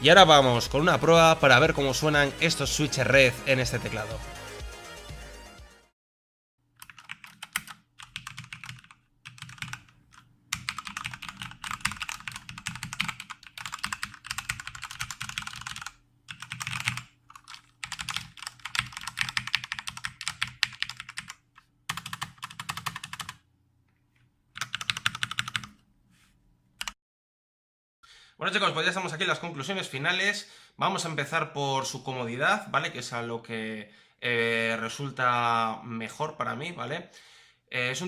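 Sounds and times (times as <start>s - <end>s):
mechanical keyboard typing: 6.8s - 23.4s, 24.6s - 25.8s.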